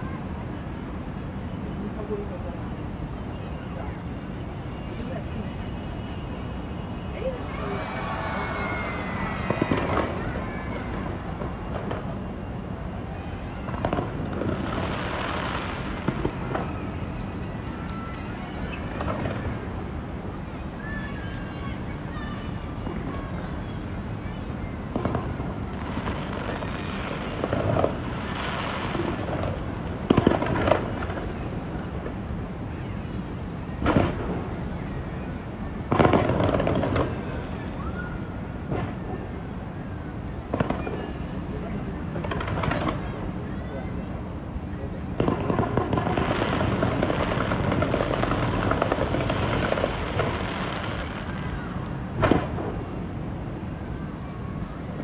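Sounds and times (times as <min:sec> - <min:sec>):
fireworks booming: 0:07.1 - 0:12.5, 0:13.4 - 0:20.1, 0:24.9 - 0:32.4, 0:33.8 - 0:34.7, 0:35.8 - 0:43.4, 0:44.8 - 0:53.7
fireworks crackling fizz: 0:07.1 - 0:23.2, 0:24.8 - 0:32.4, 0:33.8 - 0:34.8, 0:35.8 - 0:53.7.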